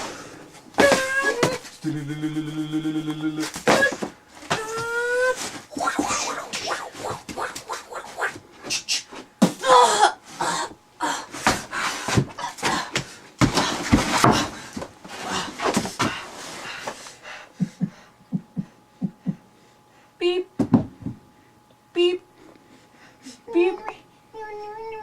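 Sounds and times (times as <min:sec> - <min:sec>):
person making mouth sound effects: 0:00.9 - 0:09.1.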